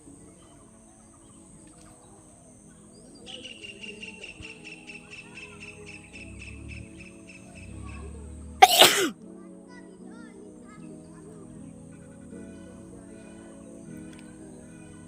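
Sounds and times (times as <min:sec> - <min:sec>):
rapid insect chirping: 0:00.0 - 0:08.8.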